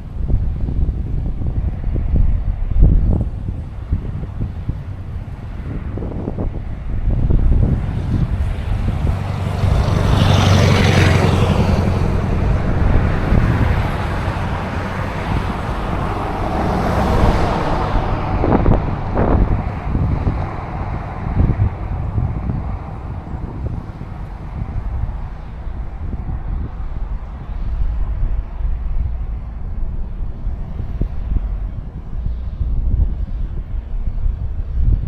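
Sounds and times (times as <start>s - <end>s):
road vehicles passing: 0.0s - 35.0s
wind on microphone: 0.0s - 35.0s.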